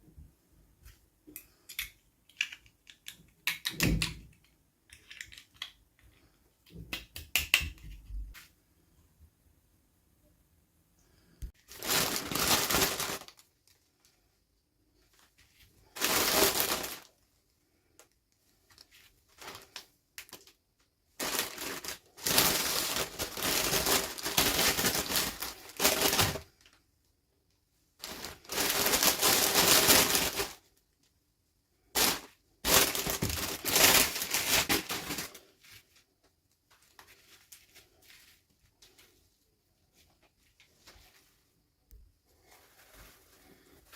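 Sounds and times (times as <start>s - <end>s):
plastic packaging crinkling and tearing: 11.6s - 14.1s, 15.8s - 17.2s, 18.7s - 20.6s, 21.2s - 26.8s, 28.0s - 30.7s, 32.0s - 35.6s.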